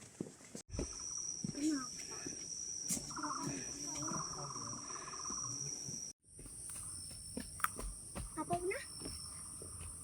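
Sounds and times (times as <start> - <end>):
high-pitched insect drone: 0.9 - 10.0
fast pulsing insect trill: 2.5 - 10.0.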